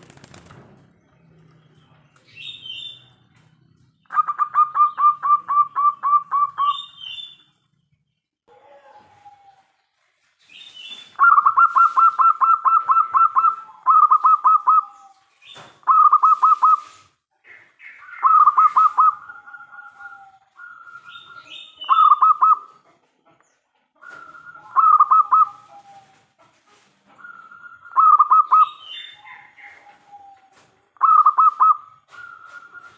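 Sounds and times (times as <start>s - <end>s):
bird chirps: 0.8s - 8.3s, 9.3s - 26.2s, 27.2s - 32.9s
dove cooing: 4.1s - 7.2s, 11.2s - 15.2s, 15.9s - 17.0s, 18.0s - 23.1s, 24.0s - 26.3s, 27.2s - 32.9s.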